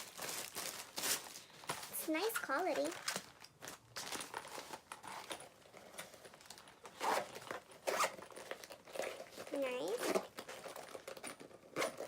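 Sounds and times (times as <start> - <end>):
bag crinkling and rustling: 0.0 - 12.0.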